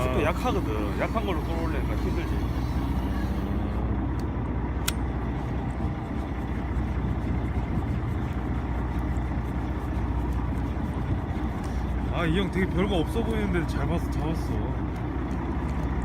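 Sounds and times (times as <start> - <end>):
boat engine droning: 0.0 - 16.0
sharp click: 4.2 - 5.1.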